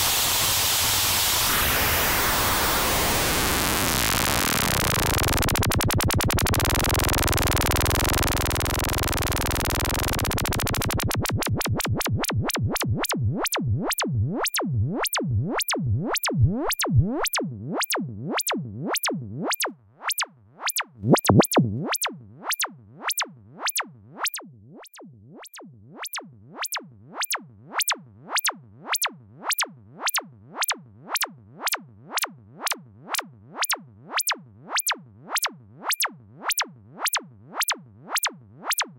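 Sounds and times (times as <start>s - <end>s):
rapid clicking pulses: 3.9s - 19.7s, 20.7s - 22.0s.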